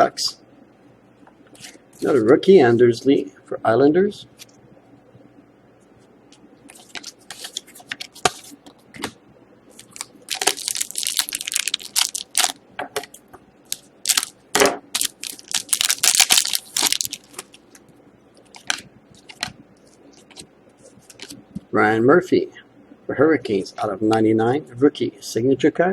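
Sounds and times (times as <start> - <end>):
card wrapper crinkling: 9.7 - 12.6, 13.7 - 17.8, 18.4 - 21.4.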